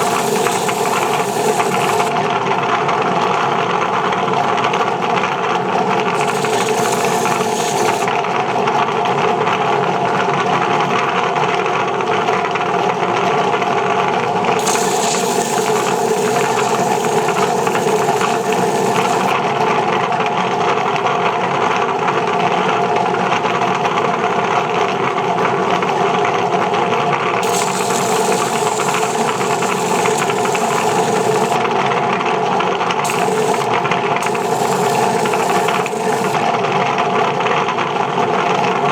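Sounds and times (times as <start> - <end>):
rotary sanding machine whirring: 0.0 - 2.3, 6.2 - 8.1, 14.6 - 19.4, 27.4 - 31.8, 33.0 - 36.6.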